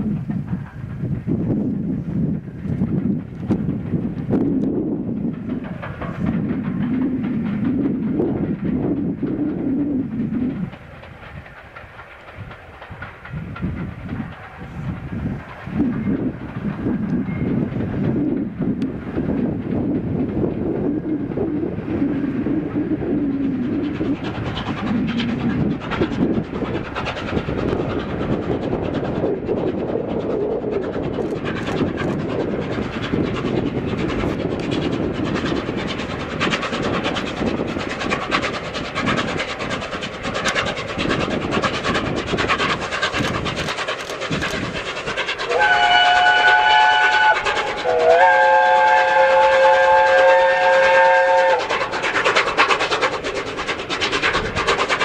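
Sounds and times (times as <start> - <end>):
steam locomotive running: 0.0 - 55.0
train clatter: 0.0 - 55.0
steam whistle chord: 45.5 - 51.6.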